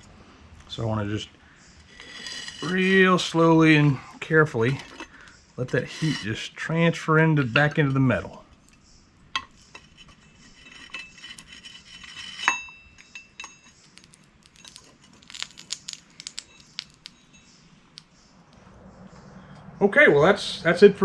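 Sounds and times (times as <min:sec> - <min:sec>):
light metallic clinks: 0:12.4 - 0:18.6.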